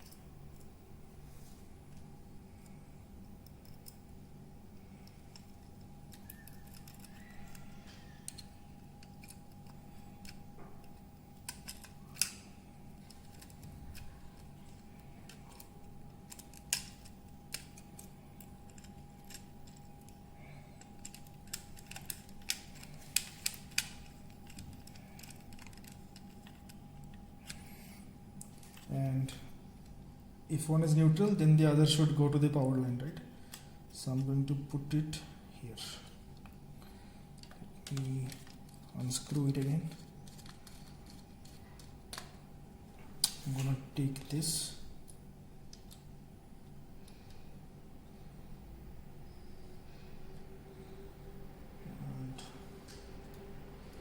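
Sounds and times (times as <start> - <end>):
hand tools clicking and snipping wires: 4.9 - 7.6, 8.2 - 27.6.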